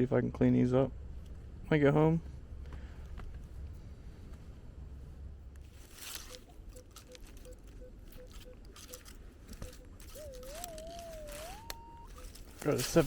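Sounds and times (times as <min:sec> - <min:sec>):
metal detector wavering tone: 0:06.1 - 0:13.0.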